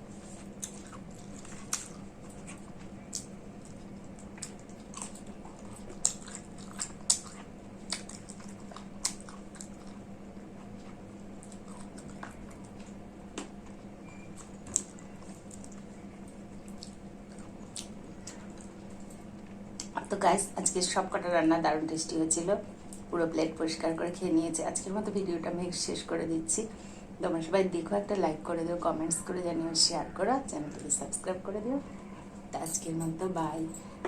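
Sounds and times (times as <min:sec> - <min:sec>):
low steady hum: 0:00.0 - 0:34.0
person chewing with mouth smacks: 0:00.1 - 0:20.0.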